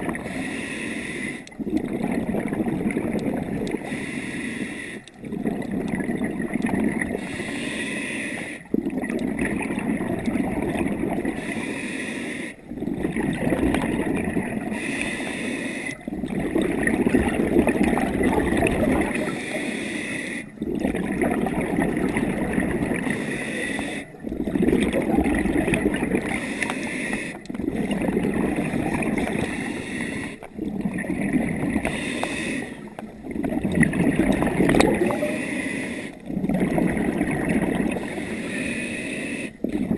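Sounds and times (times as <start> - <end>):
gurgling exhaled bubbles: 0.0 - 0.4, 1.4 - 4.0, 5.1 - 7.4, 8.6 - 11.6, 12.6 - 15.1, 15.9 - 19.6, 20.4 - 38.4, 39.5 - 39.9
regulator inhale hiss: 0.2 - 1.6, 3.7 - 5.1, 7.1 - 8.7, 11.4 - 12.6, 14.6 - 16.0, 19.1 - 20.5, 23.0 - 24.2, 26.3 - 27.5, 29.2 - 30.5, 31.8 - 33.0, 35.1 - 36.3, 37.9 - 39.7.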